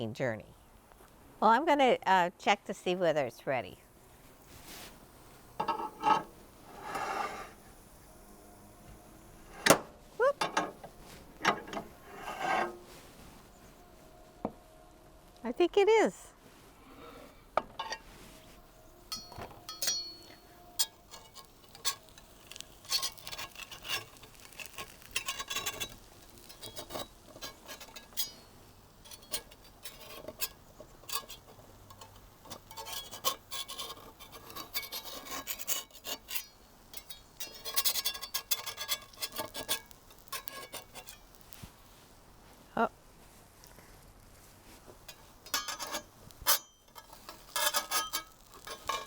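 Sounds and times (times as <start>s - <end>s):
utensil scraping cast iron pan: 4.4s - 7.9s, 9.4s - 9.8s, 10.4s - 13.7s, 17.0s - 41.9s, 44.7s - 49.0s.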